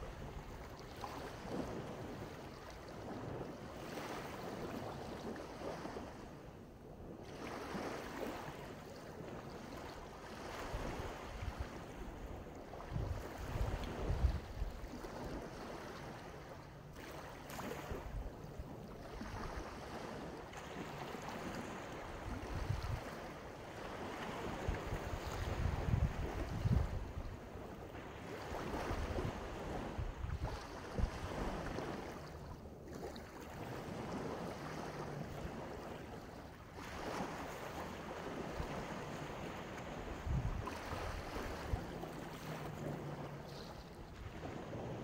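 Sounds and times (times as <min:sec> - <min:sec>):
waves washing onto sandy beach: 0:00.0 - 0:45.0
wind buffeting microphone: 0:10.5 - 0:15.7, 0:21.4 - 0:32.3, 0:36.9 - 0:45.0.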